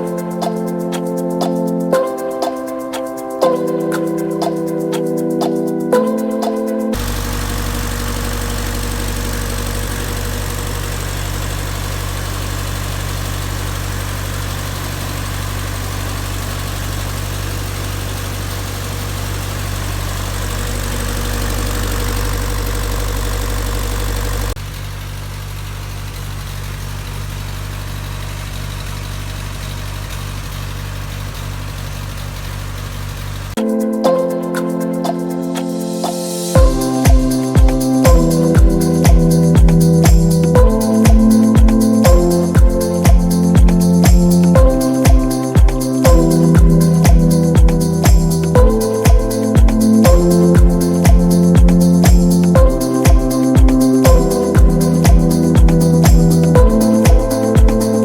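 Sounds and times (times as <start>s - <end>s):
engine idling: 6.9s - 33.6s, 35.1s - 58.0s.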